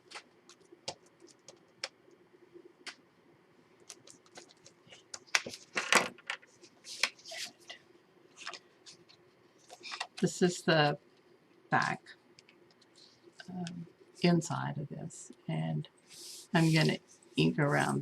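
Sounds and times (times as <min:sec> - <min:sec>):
paper rustling: 0:03.9 - 0:07.7, 0:08.4 - 0:10.2.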